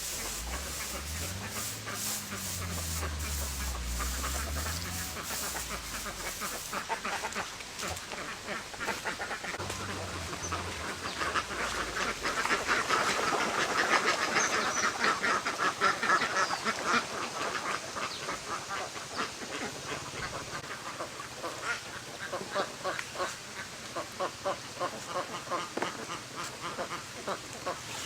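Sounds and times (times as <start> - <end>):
ducks quacking: 0.0 - 28.0.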